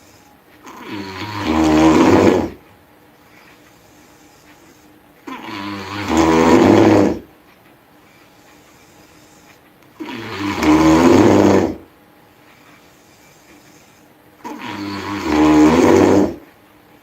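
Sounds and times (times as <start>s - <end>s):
person snoring with buzzing rattle: 0.0s - 2.6s, 5.2s - 7.3s, 10.0s - 11.9s, 13.0s - 16.5s.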